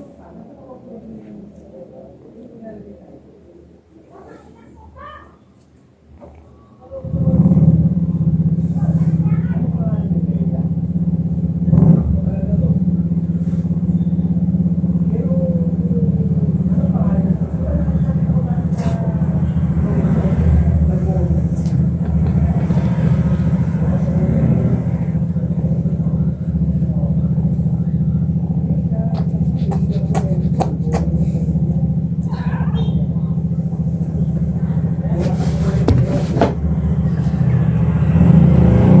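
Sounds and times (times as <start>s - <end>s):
kitten purring: 15.0s - 37.6s.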